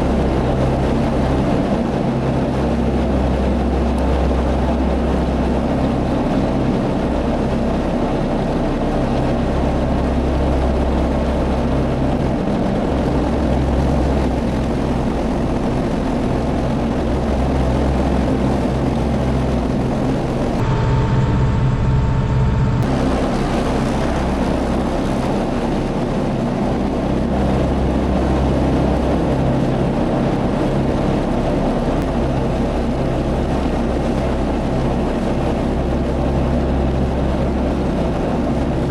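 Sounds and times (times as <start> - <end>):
thin steady whine: 0.0 - 38.9
tractor engine running: 10.6 - 26.6.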